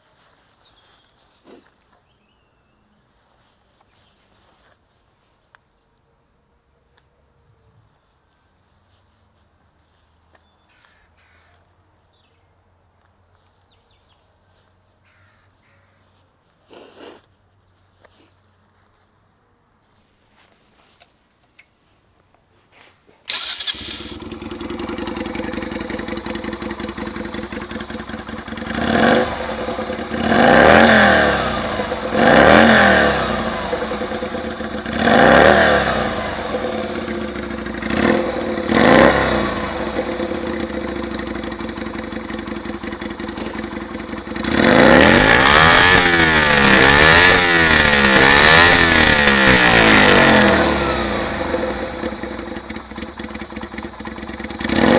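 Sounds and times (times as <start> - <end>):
motorcycle engine idling and revving: 0.0 - 2.2, 7.9 - 11.5, 23.2 - 54.9.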